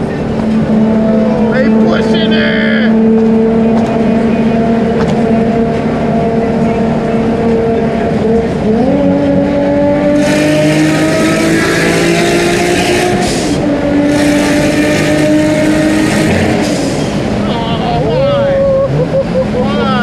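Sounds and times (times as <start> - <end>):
vehicle engine running: 0.0 - 20.0.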